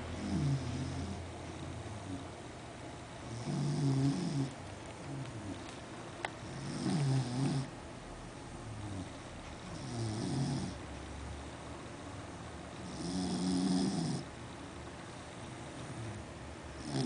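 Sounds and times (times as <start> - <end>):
dog snoring: 0.0 - 2.3, 3.2 - 5.8, 6.4 - 7.8, 8.6 - 10.8, 12.8 - 14.3, 15.7 - 16.2, 16.8 - 17.0.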